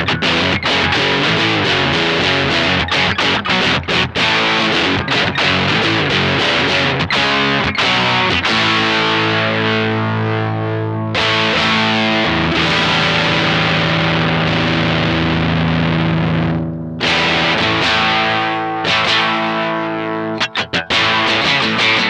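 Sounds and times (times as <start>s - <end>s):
fuzzed electric guitar chords: 0.0s - 22.0s.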